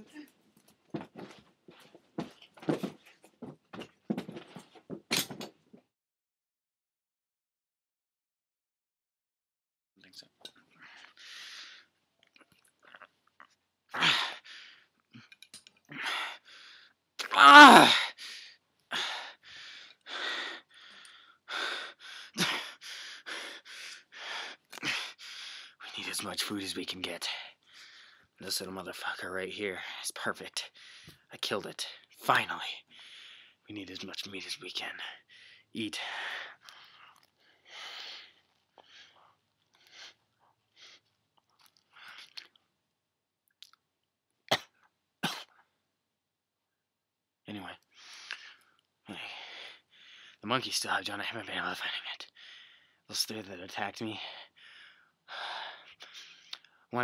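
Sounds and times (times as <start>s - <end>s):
person chewing: 12.2s - 13.6s, 41.4s - 42.6s
person panting heavily: 14.0s - 14.9s, 15.9s - 25.8s, 32.9s - 33.6s, 49.2s - 50.4s, 54.2s - 56.5s.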